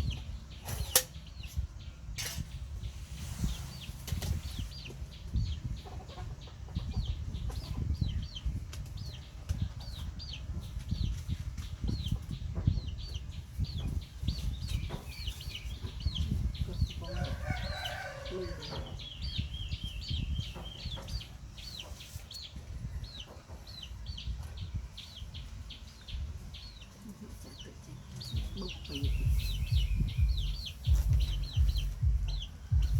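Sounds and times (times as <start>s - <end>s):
chicks peeping: 0.0s - 32.9s
low rumbling and bumps: 1.4s - 17.4s, 28.2s - 32.9s
rooster crowing: 17.0s - 18.9s.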